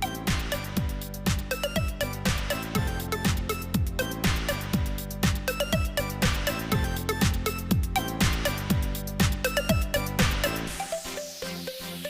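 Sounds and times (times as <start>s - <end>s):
steady kick drum: 0.0s - 10.6s
electronic dance music: 0.0s - 12.0s.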